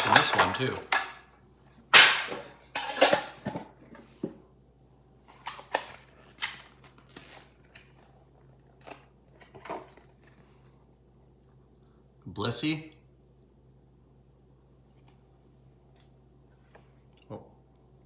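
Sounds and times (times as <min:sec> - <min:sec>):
metal tin clack: 0:00.0 - 0:01.2.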